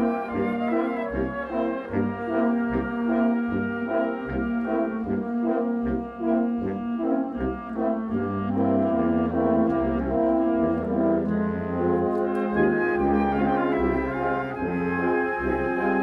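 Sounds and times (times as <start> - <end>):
brass band playing a march: 0.0 - 16.0.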